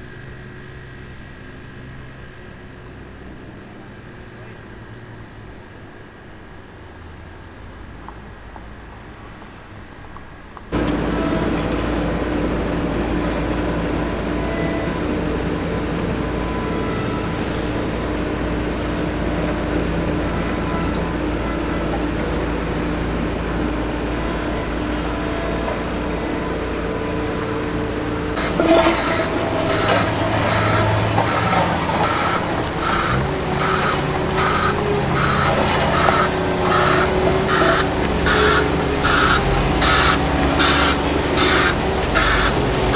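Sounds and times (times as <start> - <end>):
diesel engine running: 10.7 - 42.9
machinery rattling and knocking: 10.8 - 42.9.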